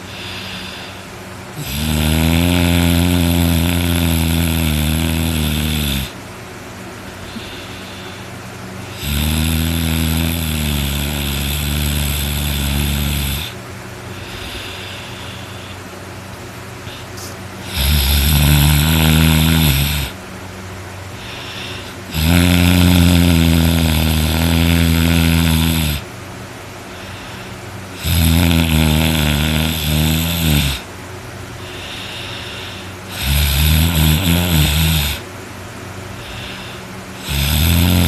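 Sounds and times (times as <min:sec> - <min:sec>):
quiet breathing: 0:00.0 - 0:01.7, 0:07.1 - 0:09.0, 0:11.3 - 0:16.0, 0:16.8 - 0:20.2, 0:21.1 - 0:26.1, 0:26.8 - 0:28.1, 0:31.5 - 0:33.4, 0:36.1 - 0:37.3
man snoring loudly: 0:00.0 - 0:06.2, 0:07.3 - 0:15.8, 0:16.9 - 0:20.2, 0:21.2 - 0:26.1, 0:26.9 - 0:30.9, 0:31.6 - 0:35.3, 0:36.2 - 0:38.0.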